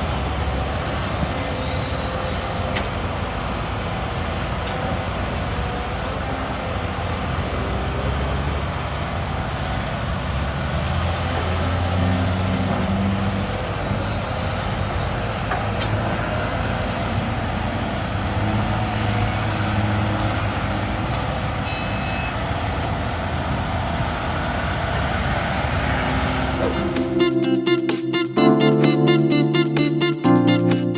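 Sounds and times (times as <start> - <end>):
diesel engine running: 0.0 - 27.8.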